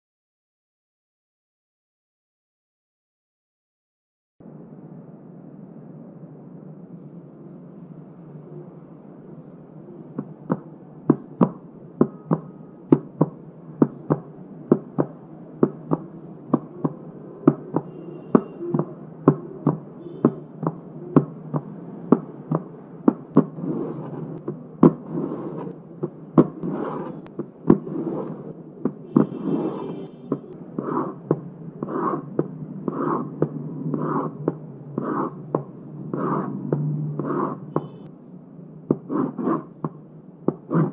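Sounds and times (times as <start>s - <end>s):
sharp taps on cardboard: 10.2s - 38.1s, 38.9s - 40.9s
rushing scraping noise: 12.0s - 38.0s, 38.9s - 39.8s, 40.5s - 40.9s.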